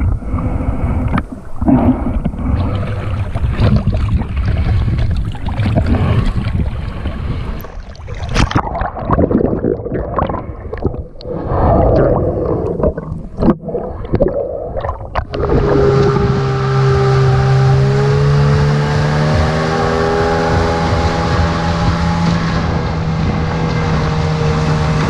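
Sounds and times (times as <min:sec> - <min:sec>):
rushing air and water: 0:00.0 - 0:25.0
wind on microphone: 0:00.0 - 0:25.0
outboard motor running: 0:15.3 - 0:25.0.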